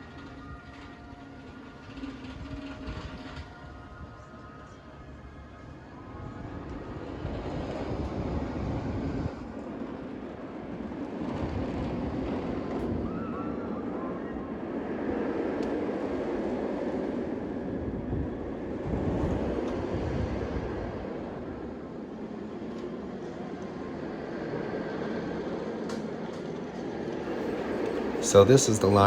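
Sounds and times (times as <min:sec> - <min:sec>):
steady rumbling noise: 0:27.3 - 0:29.0.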